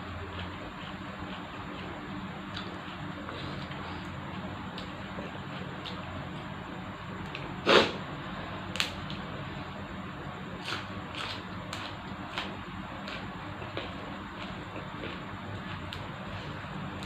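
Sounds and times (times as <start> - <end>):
background hum: 0.0 - 17.0
chewing: 0.3 - 6.0
person slurping soup: 7.6 - 8.0.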